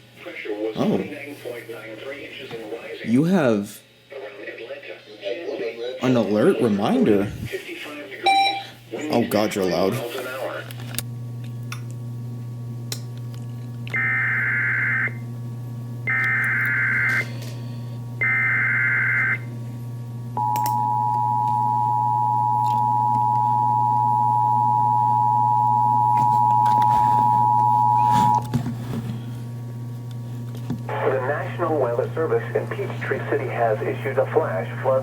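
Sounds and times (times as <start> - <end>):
two-tone attention signal: 8.3 - 8.7, 20.4 - 28.6
low hum: 20.2 - 29.0.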